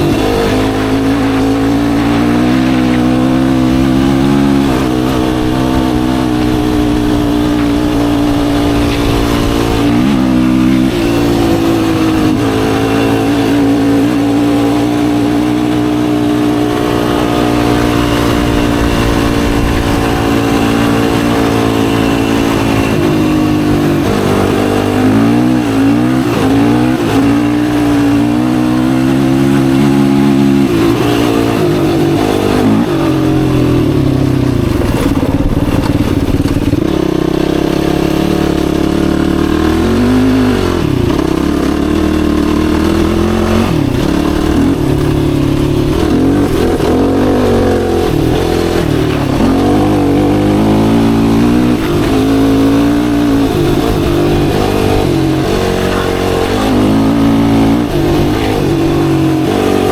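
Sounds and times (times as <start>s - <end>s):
quad bike engine running: 0.0s - 59.9s.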